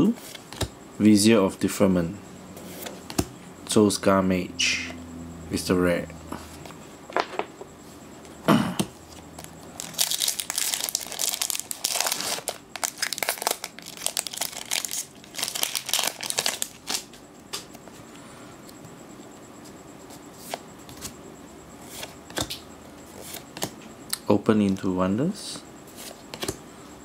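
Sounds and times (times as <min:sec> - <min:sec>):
foil wrapper crinkling and tearing: 0:09.8 - 0:17.1.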